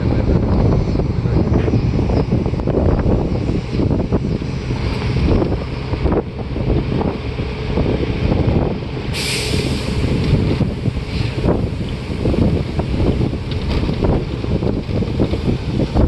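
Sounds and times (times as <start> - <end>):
bus rumble: 0.0 - 16.0
street traffic: 0.0 - 16.0
wind buffeting microphone: 0.0 - 16.0
sudden hiss: 9.1 - 12.2.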